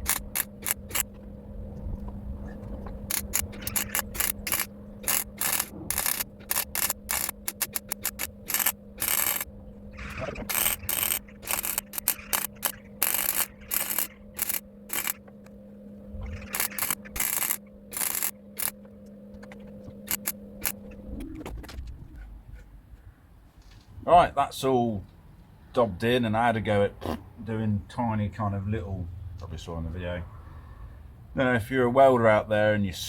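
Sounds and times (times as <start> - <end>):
welder crackling bursts: 0.0 - 1.2, 3.0 - 15.3, 16.2 - 18.8, 20.0 - 20.9
steady low hum: 0.0 - 33.0.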